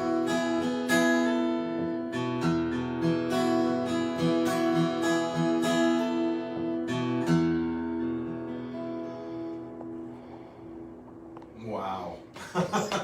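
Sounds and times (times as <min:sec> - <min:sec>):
acoustic guitar strumming: 0:00.0 - 0:13.0.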